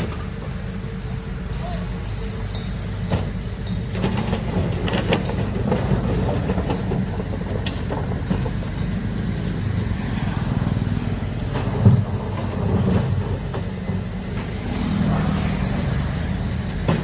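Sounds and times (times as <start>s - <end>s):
diesel engine rumbling: 0.0s - 17.0s
metallic clanks and knocks: 0.0s - 17.0s.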